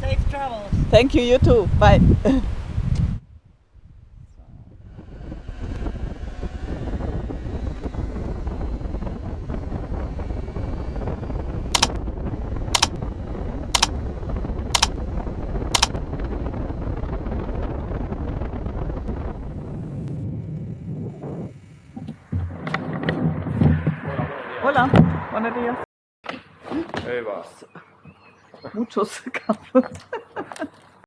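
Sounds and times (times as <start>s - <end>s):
wind noise: 0.0s - 25.4s
sharp ticks: 11.8s - 12.0s, 12.8s - 13.0s, 15.8s - 16.0s.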